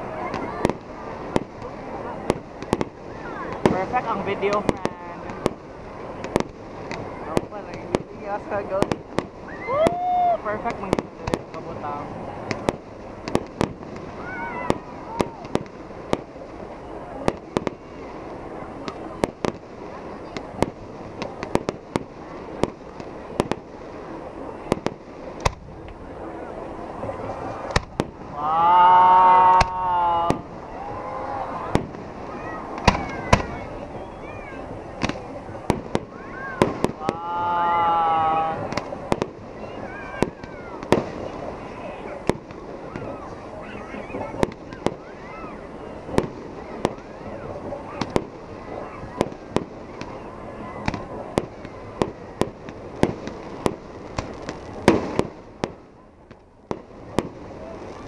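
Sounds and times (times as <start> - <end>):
fireworks bangs: 0.0 - 58.0
person exclaiming wow: 9.6 - 10.5, 28.4 - 31.6, 37.0 - 38.6.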